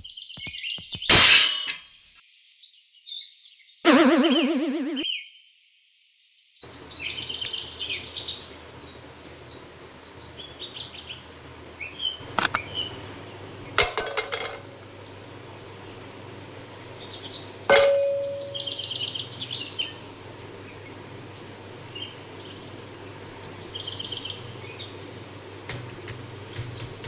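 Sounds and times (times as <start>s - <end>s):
birds chirping: 6.7s - 27.0s
steady low hum: 6.7s - 27.0s
ringing ding: 17.7s - 19.0s.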